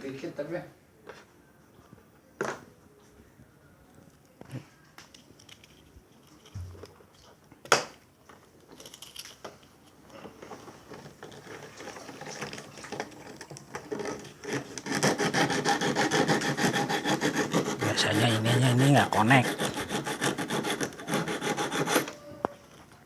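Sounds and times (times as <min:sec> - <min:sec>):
rapid scraping strokes: 0:13.9 - 0:22.1.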